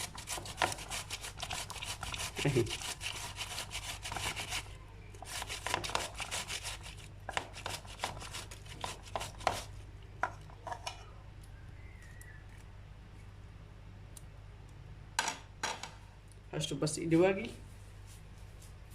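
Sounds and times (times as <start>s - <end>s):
tomatoes grated on hand grater: 0.0s - 9.7s.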